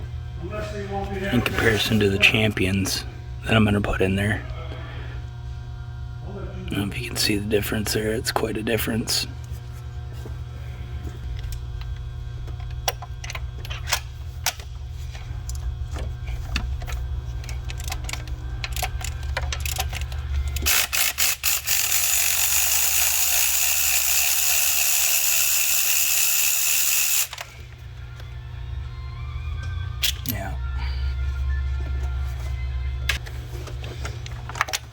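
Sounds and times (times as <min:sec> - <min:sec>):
ratchet wrench clicking: 0:17.7 - 0:27.5.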